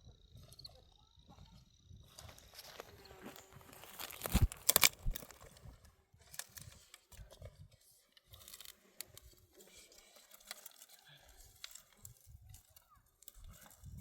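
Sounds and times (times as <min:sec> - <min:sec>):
dry branches crunching and snapping: 0:02.2 - 0:07.1, 0:08.4 - 0:14.0.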